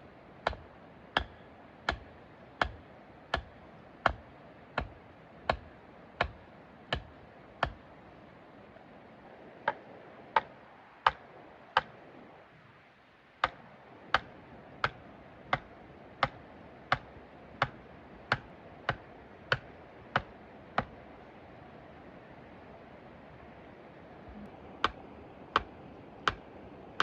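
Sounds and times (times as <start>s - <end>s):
tool striking wood: 1.2s - 4.2s, 13.4s - 20.9s, 25.6s - 26.4s.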